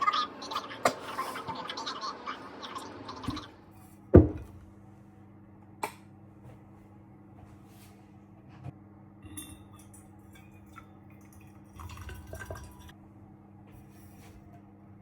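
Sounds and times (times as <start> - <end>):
dishware clinking: 9.2 - 12.9.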